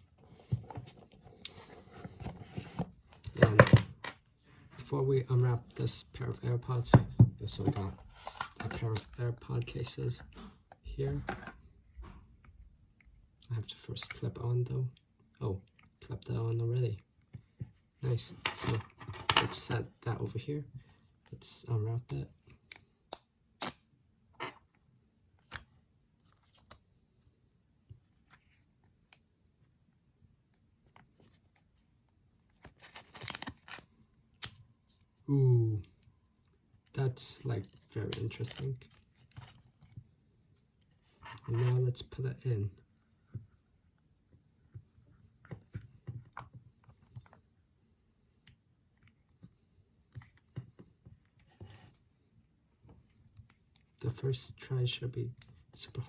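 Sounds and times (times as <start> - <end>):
packaging crinkling and tearing: 32.5 - 33.9.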